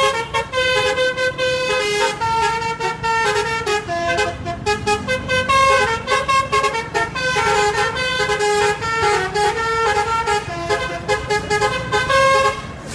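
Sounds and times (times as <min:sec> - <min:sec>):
musical bus air horn tune: 0:00.0 - 0:12.9.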